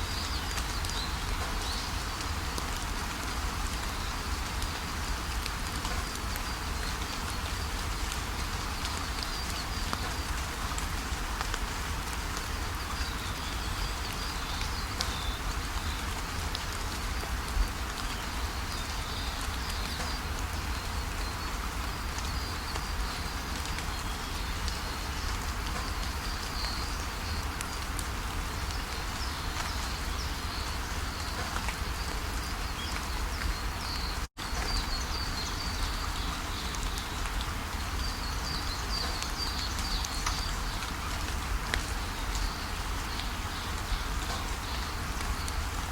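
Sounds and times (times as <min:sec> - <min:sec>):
small birds chirping: 0:17.6 - 0:45.7.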